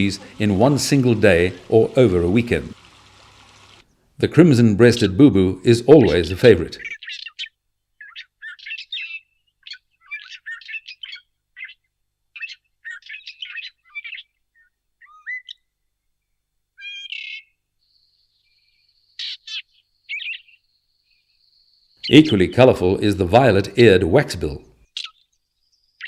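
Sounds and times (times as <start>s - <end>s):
bird chirping and whistling: 6.8s - 11.2s, 12.4s - 14.3s, 15.0s - 15.6s, 16.8s - 17.5s, 19.2s - 20.6s, 25.0s - 25.3s.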